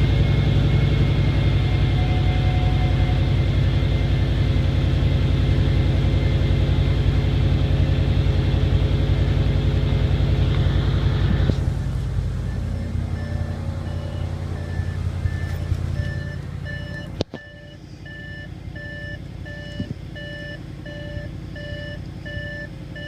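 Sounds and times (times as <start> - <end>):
car engine idling: 0.0 - 23.0
electronic beep: 12.5 - 23.0.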